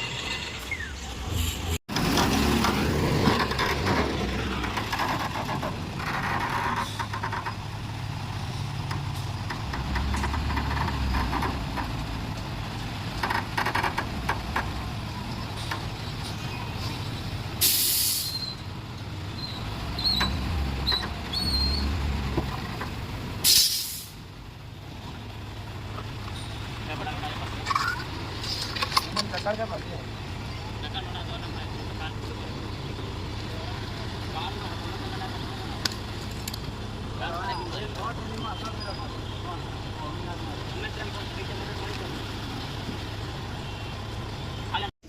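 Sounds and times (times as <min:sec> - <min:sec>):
diesel engine running: 0:00.0 - 0:44.8
air release hisses: 0:17.6 - 0:18.4, 0:23.4 - 0:24.2.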